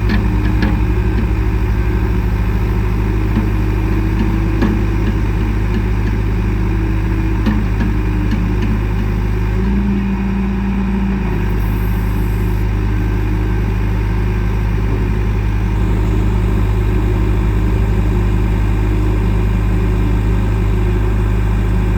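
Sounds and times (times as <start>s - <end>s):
diesel engine idling: 0.0s - 21.9s.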